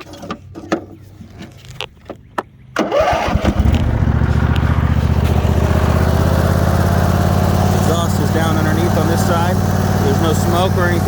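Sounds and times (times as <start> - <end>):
mower engine cranked by starter: 2.8 - 11.0
mower engine running: 2.8 - 11.0.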